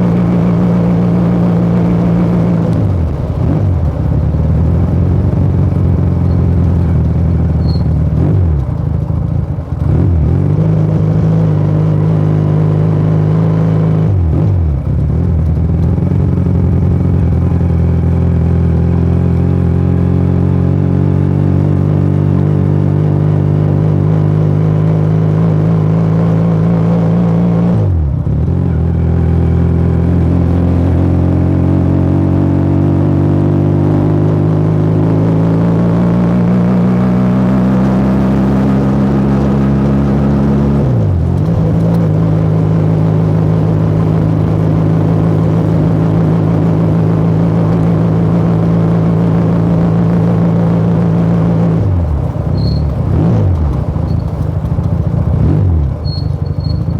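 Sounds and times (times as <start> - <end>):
motorcycle engine and exhaust: 0.0 - 56.9.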